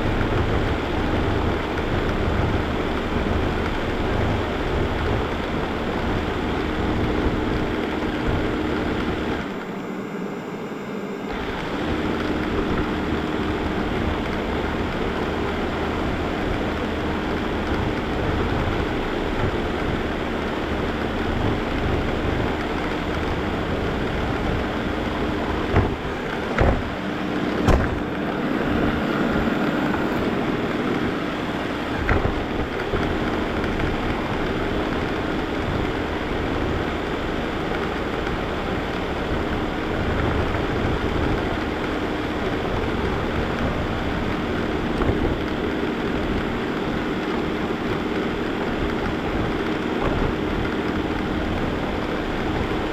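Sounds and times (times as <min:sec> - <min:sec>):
sharp knocks: 0:25.7 - 0:28.2.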